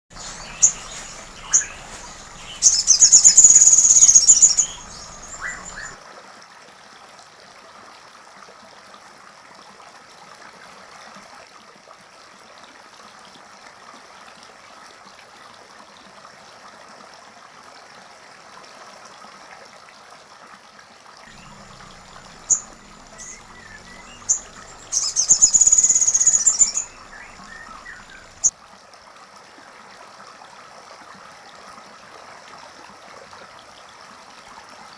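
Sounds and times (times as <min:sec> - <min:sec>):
sharp bird chirps: 0:00.1 - 0:06.0, 0:21.3 - 0:28.5
songbird singing: 0:00.1 - 0:06.0, 0:21.3 - 0:28.5
water trickling: 0:00.1 - 0:06.0, 0:21.3 - 0:28.5.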